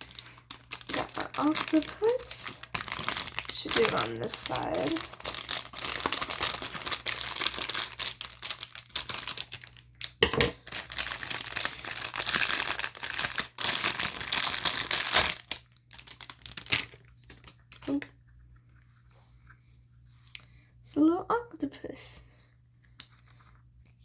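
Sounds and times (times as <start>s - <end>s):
packaging crinkling and tearing: 0.0s - 17.9s.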